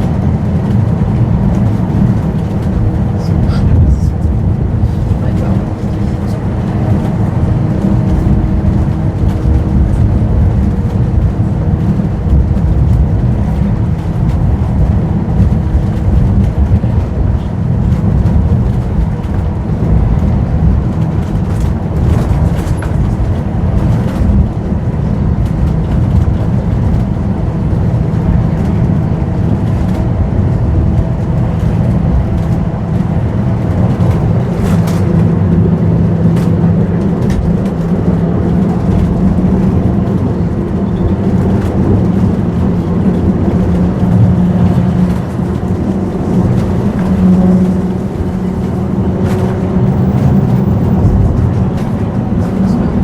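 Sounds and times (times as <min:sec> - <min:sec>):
tram rumbling in motion: 0:00.0 - 0:53.0.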